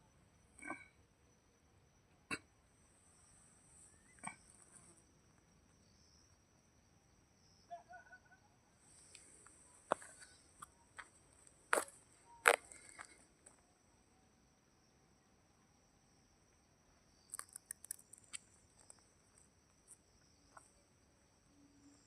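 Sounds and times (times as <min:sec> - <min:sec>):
insects buzzing: 0:16.1 - 0:22.0.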